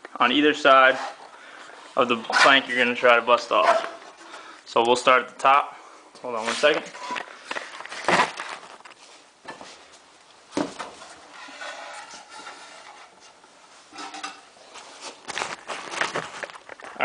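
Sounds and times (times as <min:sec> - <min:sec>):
scraping and rustling: 0:06.3 - 0:17.0.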